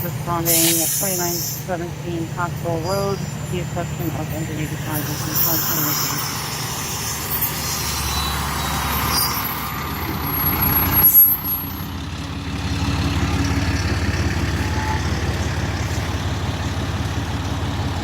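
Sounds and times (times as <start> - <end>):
diesel engine running: 0.0 - 18.0
air brakes hissing: 0.4 - 1.8.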